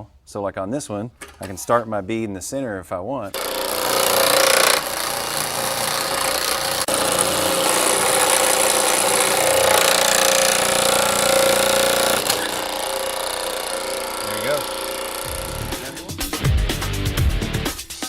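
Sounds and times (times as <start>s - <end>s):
power hammer hammering sheet metal: 3.4s - 16.3s
motor hum: 3.4s - 16.4s.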